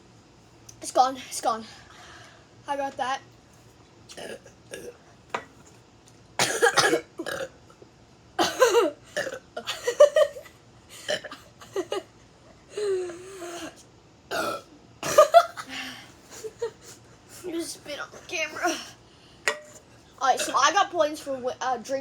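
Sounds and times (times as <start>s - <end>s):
people burping: 4.2s - 5.0s, 6.4s - 7.6s, 8.4s - 9.9s, 11.0s - 12.0s, 14.3s - 15.5s.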